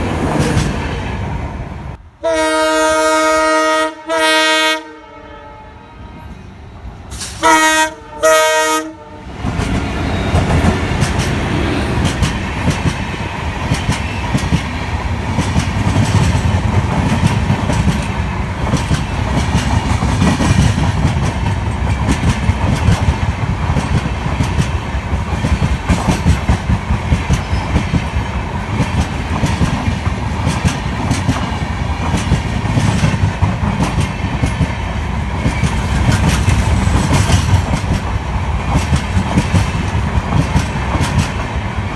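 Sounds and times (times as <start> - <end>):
train horn blasts: 2.2 - 6.5, 7.4 - 9.3
train wheels clattering: 9.4 - 41.9.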